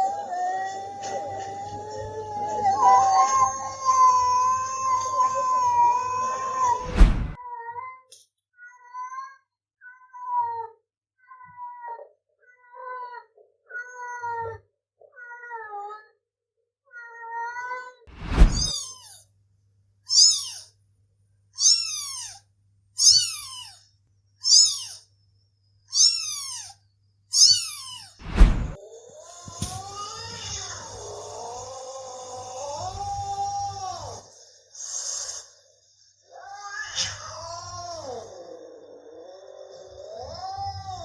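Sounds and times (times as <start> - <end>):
cat meowing softly: 0.0 - 7.9, 16.9 - 19.1
cat meowing high-pitched: 0.0 - 8.0, 8.6 - 16.1, 16.9 - 19.2, 23.0 - 23.8, 25.9 - 28.2, 29.3 - 34.3, 36.3 - 41.0.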